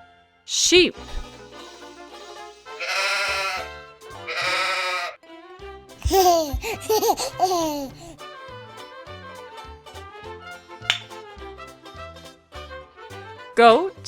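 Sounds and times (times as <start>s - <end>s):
light background music: 0.4s - 5.0s, 5.6s - 14.0s
sheep bleating: 2.8s - 3.7s, 4.3s - 5.2s.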